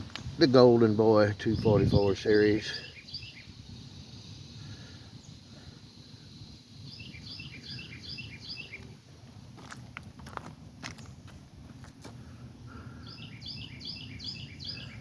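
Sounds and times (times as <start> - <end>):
faint outdoor hum: 0.0 - 15.0
small bird chirping: 2.2 - 9.0, 13.0 - 15.0.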